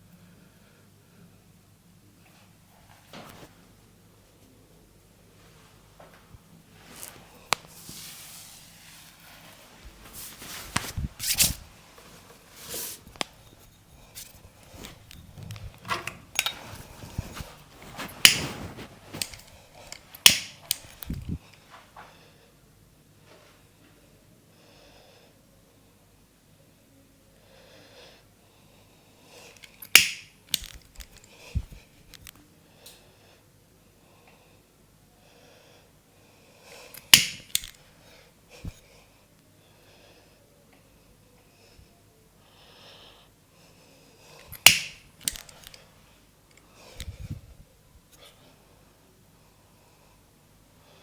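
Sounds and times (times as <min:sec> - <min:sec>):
breathy rustling: 0:06.9 - 0:22.4
sharp snapping cracks: 0:17.9 - 0:21.3, 0:29.6 - 0:31.3, 0:37.0 - 0:37.8, 0:44.5 - 0:45.8
hands slapping: 0:44.6 - 0:45.4.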